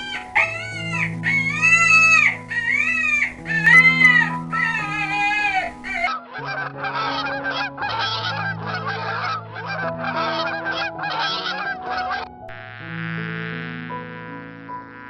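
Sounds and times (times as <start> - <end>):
farm waterfowl calling: 0.0 - 12.4
background music with low notes: 0.0 - 15.0.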